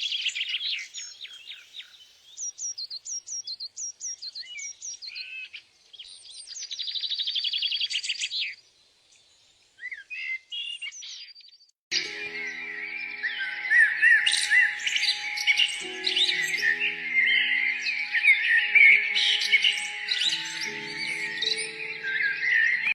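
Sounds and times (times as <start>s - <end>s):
songbirds singing: 0.0s - 22.9s
music with steady tones: 11.9s - 22.9s.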